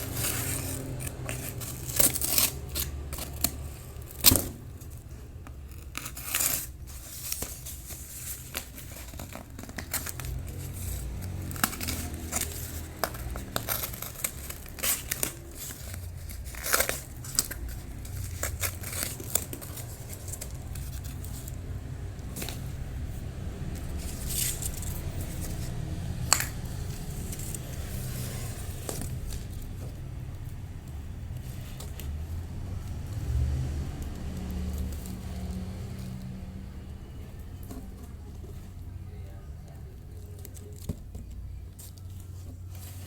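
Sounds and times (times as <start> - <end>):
scissors cutting cardboard: 0.0 - 21.6
cardboard tearing: 0.0 - 22.7, 23.9 - 25.9.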